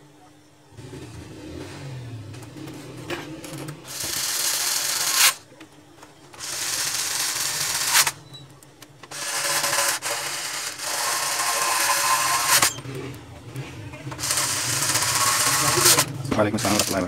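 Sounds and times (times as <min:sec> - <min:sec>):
power screwdriver running: 0:03.9 - 0:05.4, 0:06.4 - 0:08.2, 0:09.1 - 0:12.8, 0:14.2 - 0:17.0.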